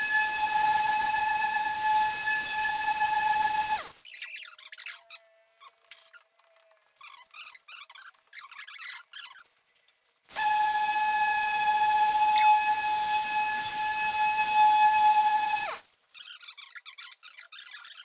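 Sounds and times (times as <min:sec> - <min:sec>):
machine polisher whining: 0:00.0 - 0:03.9, 0:10.3 - 0:15.8.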